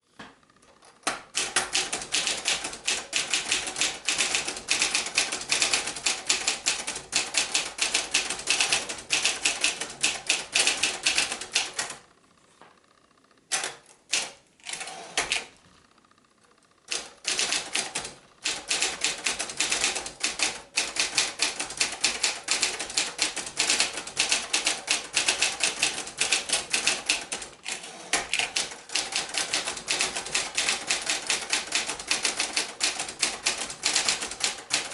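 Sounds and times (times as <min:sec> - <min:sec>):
manual typewriter typing: 0:01.1 - 0:12.0, 0:13.5 - 0:15.5, 0:16.9 - 0:34.9.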